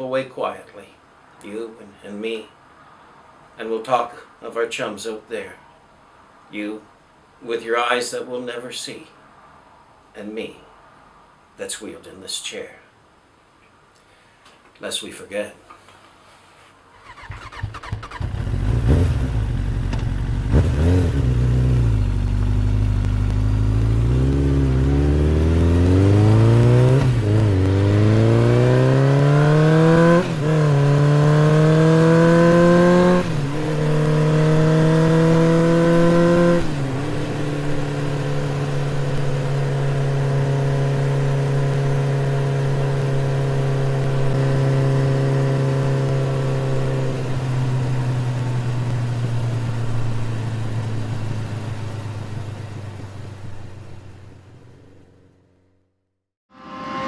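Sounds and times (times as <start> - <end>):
motorcycle engine accelerating: 17.0 - 55.5.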